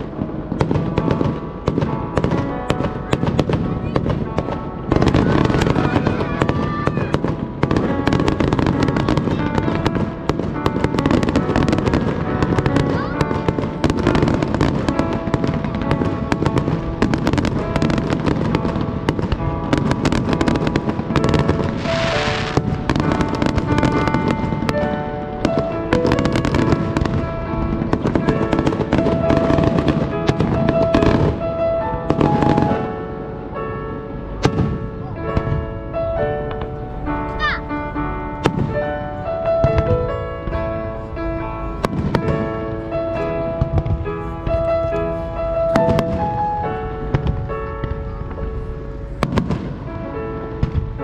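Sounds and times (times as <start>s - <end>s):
fireworks bursting and crackling: 0.0s - 51.0s
music playing: 0.0s - 51.0s
firework hissing: 19.4s - 25.1s.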